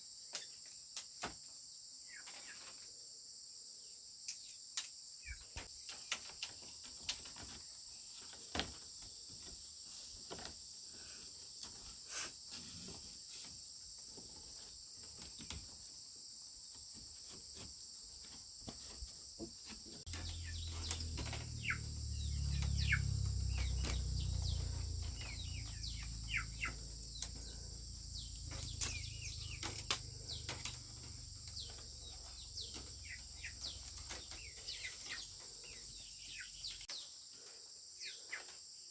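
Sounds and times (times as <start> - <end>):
crickets chirring: 0.0 - 38.9
birds chirping: 4.3 - 9.5, 16.6 - 38.8
low rumble: 20.1 - 29.6
small clicks and knocks: 28.4 - 34.7.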